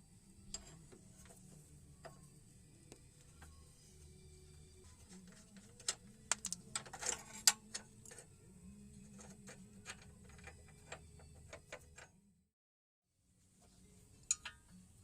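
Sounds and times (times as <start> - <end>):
faint low hum: 0.0 - 12.4
hand tools clicking and knocking: 5.3 - 8.2.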